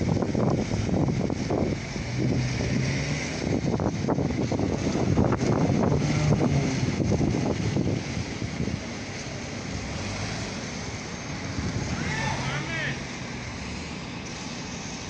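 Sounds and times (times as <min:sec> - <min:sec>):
wind buffeting microphone: 0:00.0 - 0:10.0, 0:11.3 - 0:12.2.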